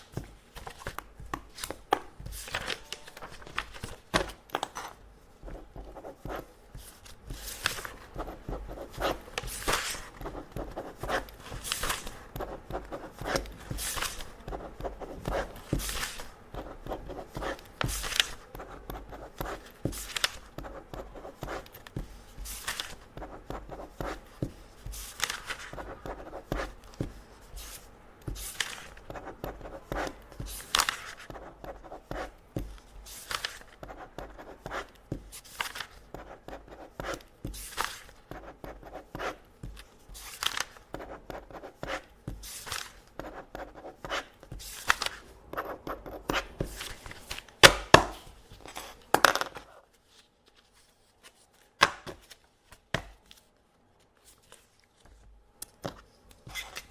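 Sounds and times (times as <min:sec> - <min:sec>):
paper rustling: 0:00.0 - 0:18.5, 0:19.4 - 0:20.6, 0:21.2 - 0:33.9, 0:34.8 - 0:36.2, 0:37.1 - 0:38.2, 0:39.6 - 0:43.2, 0:44.0 - 0:45.3, 0:46.2 - 0:53.6
pen scratching on paper: 0:05.4 - 0:21.8, 0:22.4 - 0:26.9, 0:27.6 - 0:32.4, 0:36.1 - 0:39.5, 0:40.9 - 0:47.1.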